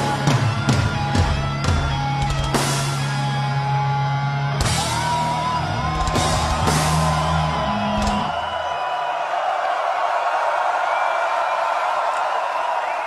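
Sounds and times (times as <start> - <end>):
live heavy metal band: 0.0 - 8.7
crowd cheering and whooping: 3.3 - 13.0.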